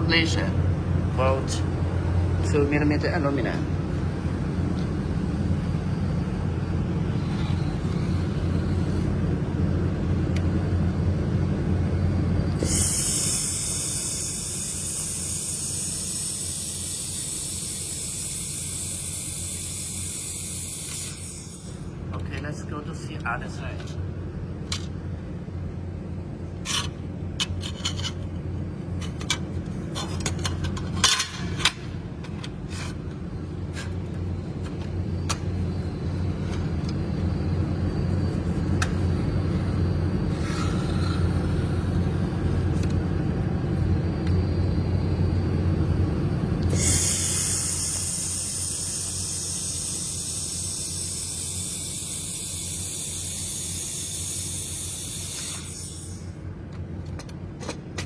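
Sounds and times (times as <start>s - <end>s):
welding machine humming: 11.5s - 22.2s, 26.5s - 56.6s
loud gas hiss: 12.5s - 22.0s, 40.2s - 42.0s, 46.6s - 56.4s.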